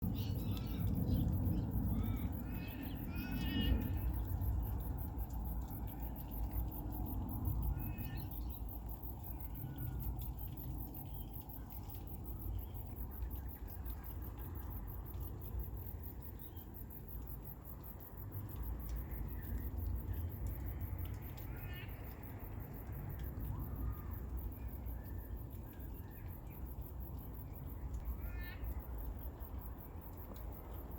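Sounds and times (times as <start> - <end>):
steady low rumble: 0.0 - 28.1.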